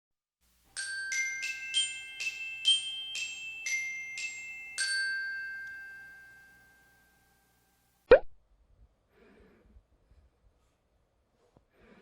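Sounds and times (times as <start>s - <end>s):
glockenspiel jingle: 0.7s - 7.9s.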